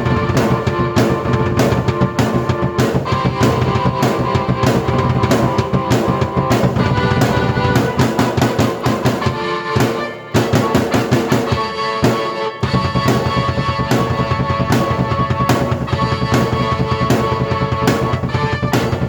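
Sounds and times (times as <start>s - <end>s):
drum beat: 0.0s - 19.0s
quick drum fill: 0.0s - 19.0s
sustained keyboard chords: 0.0s - 19.0s.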